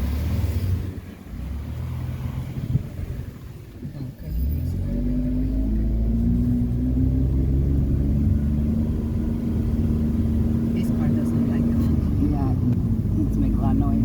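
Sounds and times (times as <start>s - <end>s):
car engine humming: 0.0s - 14.0s
road rumble: 0.0s - 14.0s.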